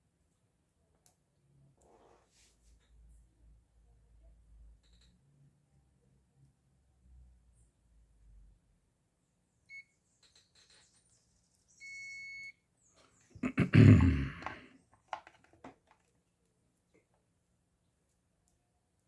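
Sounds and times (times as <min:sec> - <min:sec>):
continuity tester beeping: 0:11.8 - 0:12.6
clatter of handling: 0:14.4 - 0:16.2.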